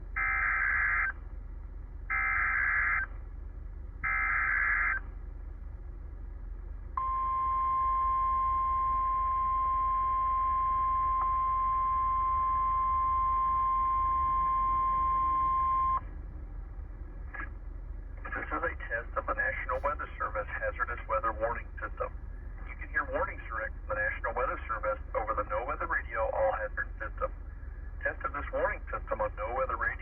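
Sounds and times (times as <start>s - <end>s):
steady warning alert tone: 7.0s - 16.1s.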